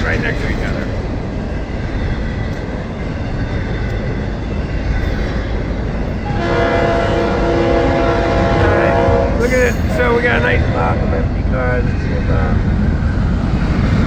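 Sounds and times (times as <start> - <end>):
freight train rumbling: 0.0 - 14.0
locomotive horn chord: 6.2 - 9.9.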